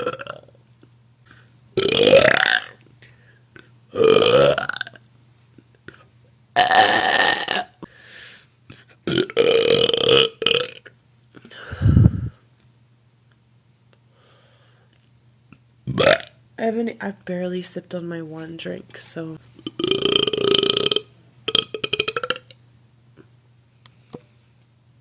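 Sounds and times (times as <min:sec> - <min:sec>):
woman burping loudly: 0:00.0 - 0:00.5, 0:01.8 - 0:02.7, 0:03.9 - 0:04.9, 0:06.6 - 0:07.8, 0:09.1 - 0:10.8, 0:15.9 - 0:16.3, 0:19.6 - 0:22.6.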